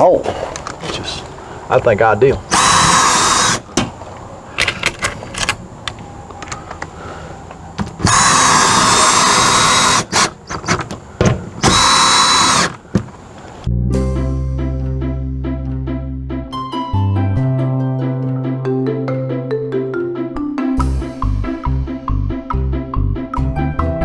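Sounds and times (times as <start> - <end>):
bolts clanking and knocking: 0.0 - 13.7
power drill driving bolts: 2.3 - 13.7
background music: 13.7 - 24.0.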